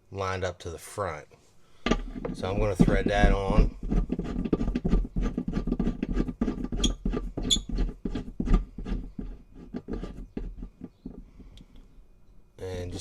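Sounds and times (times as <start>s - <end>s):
scratchy clicks and metal rubbing: 1.9s - 11.8s.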